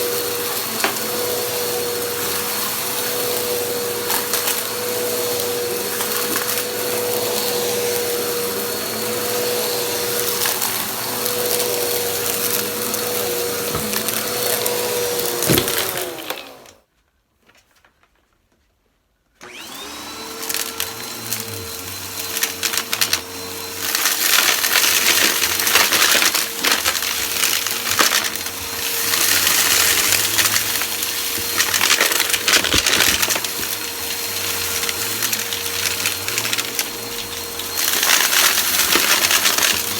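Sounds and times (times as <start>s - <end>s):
vacuum cleaner motor whine: 0.0s - 16.8s, 19.4s - 39.9s
debris crackling being sucked up: 19.6s - 39.9s.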